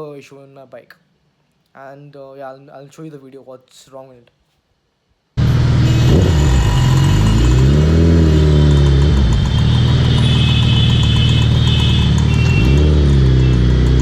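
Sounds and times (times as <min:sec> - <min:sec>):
motorcycle engine revving: 0:05.4 - 0:14.0.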